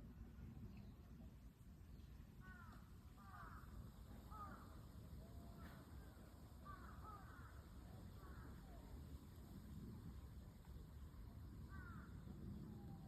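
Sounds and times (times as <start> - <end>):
faint crow cawing: 2.4 - 8.9, 11.6 - 12.3.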